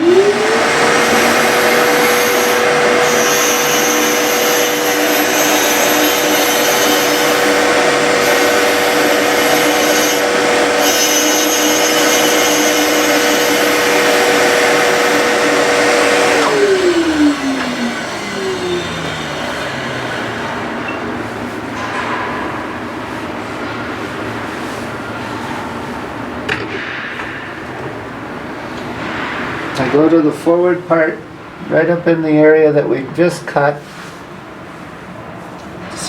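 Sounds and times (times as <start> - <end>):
grinding wheel whining: 0.0 - 22.0.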